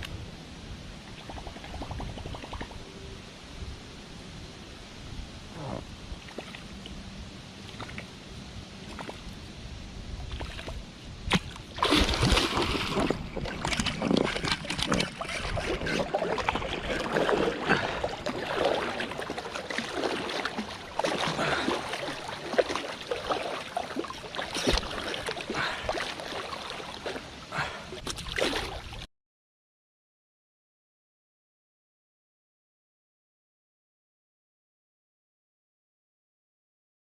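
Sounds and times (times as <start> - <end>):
water splashing: 5.6 - 7.0, 7.6 - 8.1, 8.8 - 9.4, 10.2 - 29.1.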